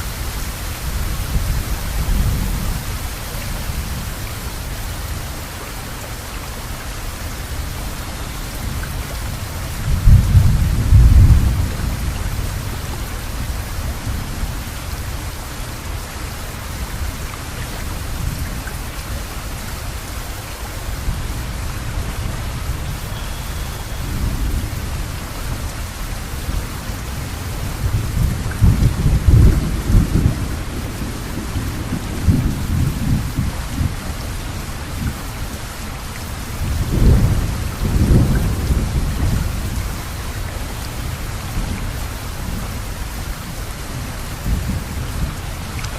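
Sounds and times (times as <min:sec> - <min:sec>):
heavy rain: 0:00.0 - 0:45.9
thunder rumbling: 0:08.6 - 0:14.6, 0:21.0 - 0:35.6, 0:36.5 - 0:45.8.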